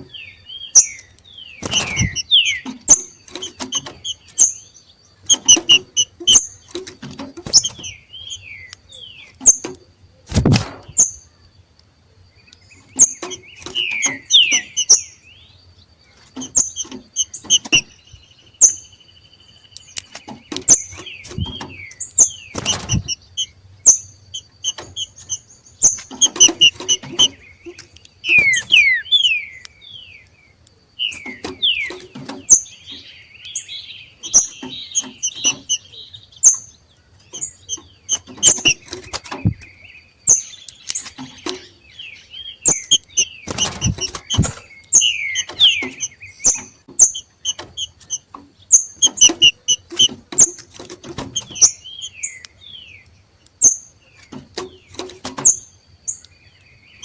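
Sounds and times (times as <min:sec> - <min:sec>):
bird chirps and whistles: 0:00.7 - 0:04.5, 0:05.3 - 0:06.5, 0:07.5 - 0:08.6, 0:13.0 - 0:15.1, 0:22.5 - 0:27.4, 0:28.2 - 0:29.7, 0:34.2 - 0:35.9, 0:37.4 - 0:39.6, 0:42.6 - 0:48.2, 0:49.0 - 0:50.2
bird scratchy chattering: 0:00.8 - 0:04.6, 0:05.2 - 0:08.4, 0:12.9 - 0:15.1, 0:16.2 - 0:18.1, 0:20.0 - 0:29.4, 0:33.6 - 0:36.6, 0:37.2 - 0:39.7, 0:42.6 - 0:52.3.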